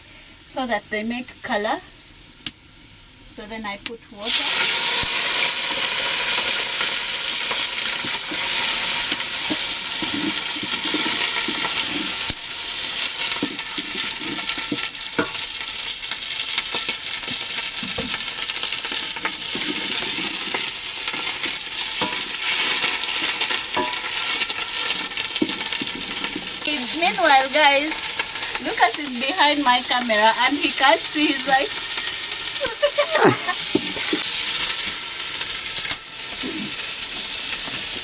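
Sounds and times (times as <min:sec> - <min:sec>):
onions sizzling in a saucepan: 0:00.0 - 0:38.0
stirring: 0:07.8 - 0:12.4, 0:13.0 - 0:15.4.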